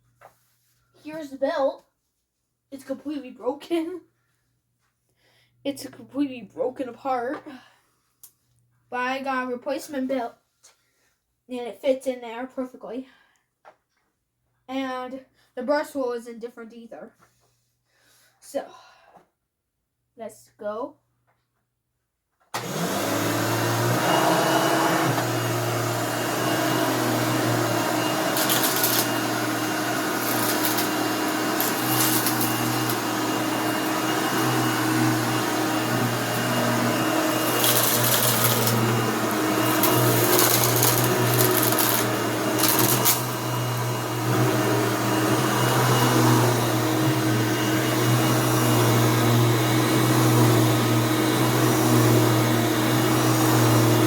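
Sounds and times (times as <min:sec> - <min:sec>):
vacuum cleaner motor hum: 0:22.6 - 0:54.0.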